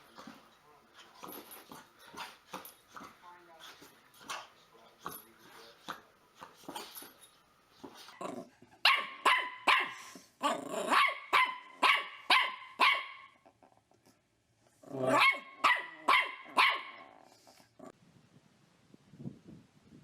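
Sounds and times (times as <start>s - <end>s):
dog barking: 8.8s - 10.1s, 10.9s - 13.4s, 15.1s - 17.1s.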